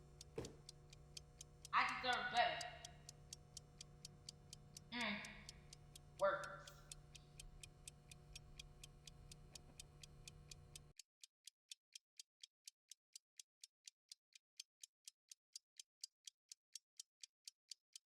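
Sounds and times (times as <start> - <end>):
low steady hum: 0.0 - 10.9
clock ticking fast: 0.0 - 18.0.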